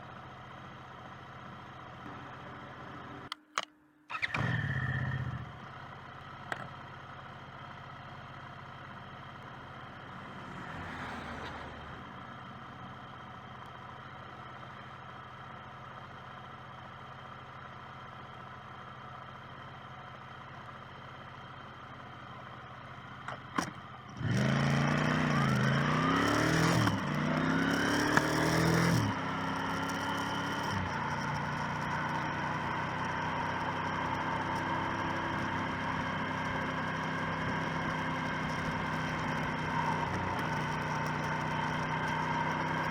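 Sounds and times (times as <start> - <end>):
motorcycle engine: 0.0 - 42.9.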